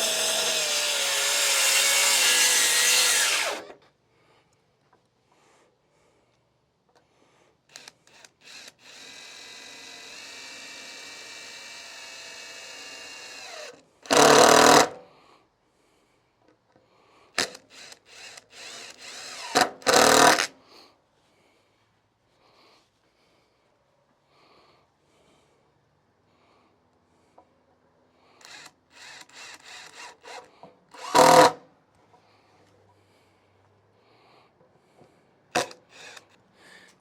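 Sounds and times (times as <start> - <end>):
power drill driving screws: 0.0 - 3.8, 7.7 - 15.0, 17.4 - 20.5, 28.4 - 31.6, 35.6 - 36.4.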